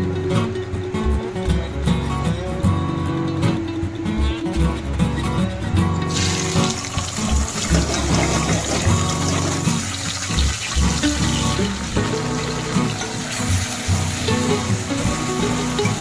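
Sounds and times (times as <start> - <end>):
water running from a tap: 6.1 - 16.0.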